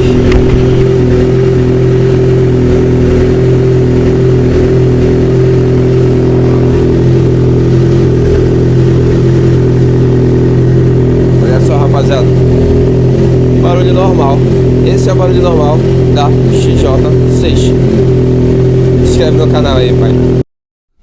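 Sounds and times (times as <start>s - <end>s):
motorcycle engine idling: 0.0s - 20.4s.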